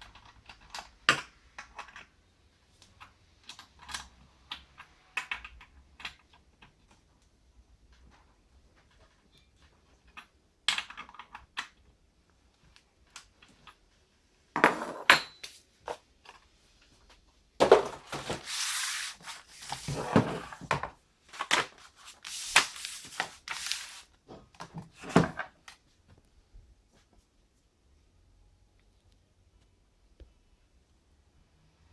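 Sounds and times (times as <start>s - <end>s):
rustling and scraping: 15.5s - 25.6s.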